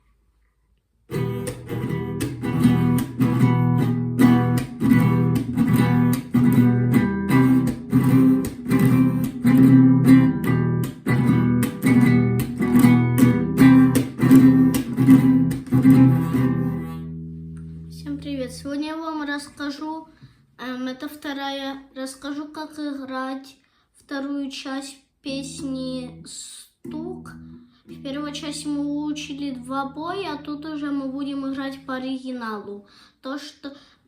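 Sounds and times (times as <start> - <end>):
muted percussive guitar strokes: 1.1 - 18.6, 26.8 - 30.8
acoustic guitar strumming: 1.1 - 18.7, 26.9 - 32.0.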